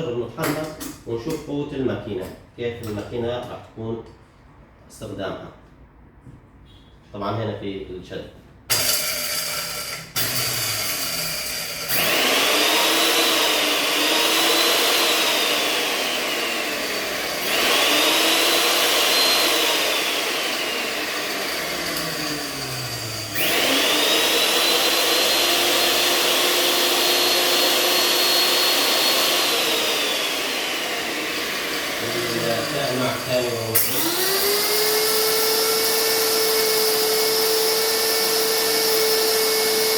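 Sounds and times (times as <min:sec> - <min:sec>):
electric blade grinder whine: 0:08.8 - 0:39.9.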